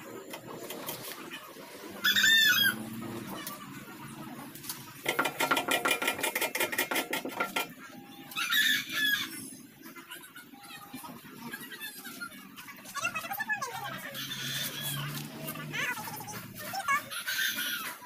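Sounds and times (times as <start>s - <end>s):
birds chirping: 0.0s - 18.0s
rapid metallic rattling: 4.8s - 7.9s.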